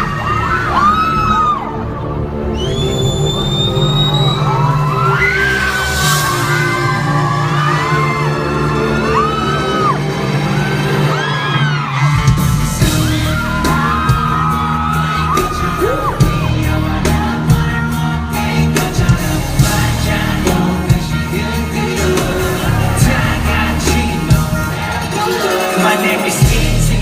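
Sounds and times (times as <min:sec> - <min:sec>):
fans whooping and yelling: 0:00.0 - 0:01.9, 0:02.5 - 0:18.0
amplified pop song with heavy beat: 0:03.7 - 0:27.0
man singing live: 0:12.8 - 0:27.0.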